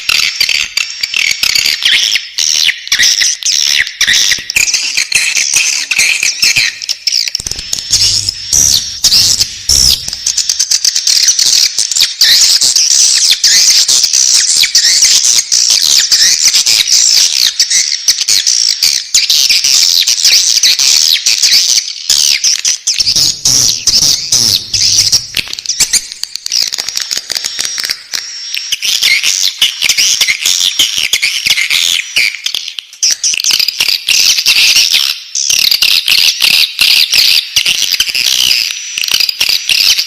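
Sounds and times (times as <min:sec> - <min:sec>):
bird chicks chirping: 0:00.0 - 0:34.3.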